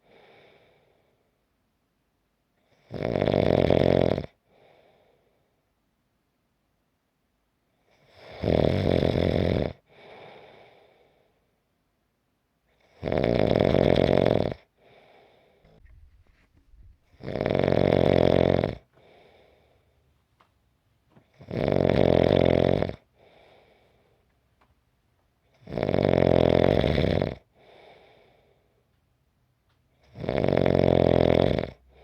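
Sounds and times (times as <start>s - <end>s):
faint breath: 0.0s - 1.4s, 4.4s - 5.7s, 9.9s - 11.6s, 14.8s - 17.2s, 18.9s - 20.2s, 23.1s - 24.4s, 27.5s - 28.9s
person snoring: 2.7s - 4.4s, 8.0s - 10.8s, 12.8s - 14.7s, 17.1s - 19.7s, 21.3s - 23.8s, 25.6s - 28.4s, 30.0s - 32.0s.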